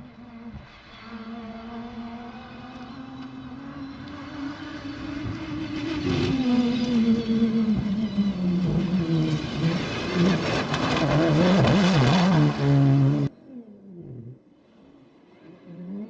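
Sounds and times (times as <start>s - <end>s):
rally car engine revving: 0.3s - 13.3s.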